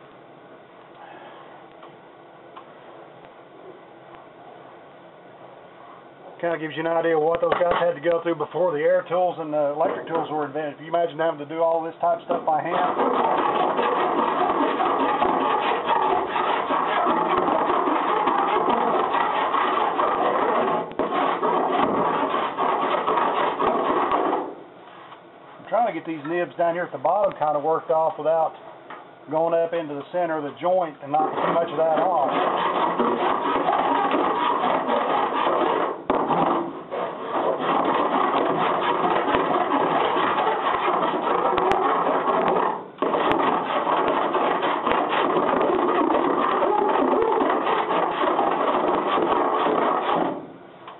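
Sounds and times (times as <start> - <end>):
hand file rasping on metal: 12.3 - 24.4, 31.0 - 50.4.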